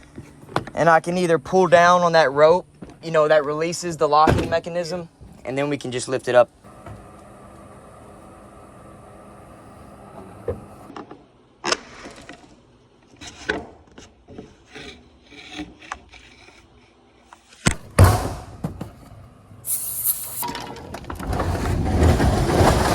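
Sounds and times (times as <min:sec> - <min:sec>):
sharp clunk: 0:17.7 - 0:19.0
scraping against garage door: 0:20.4 - 0:22.9.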